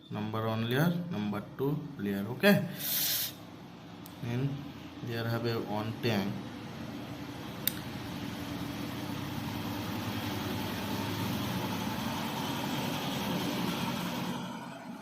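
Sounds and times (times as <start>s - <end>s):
engine rumble with hiss: 2.6s - 15.0s.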